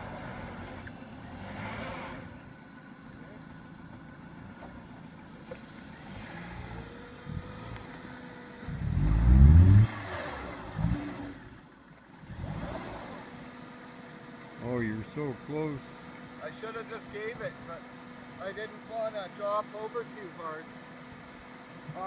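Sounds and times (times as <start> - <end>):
car engine revving: 0.0 - 16.6.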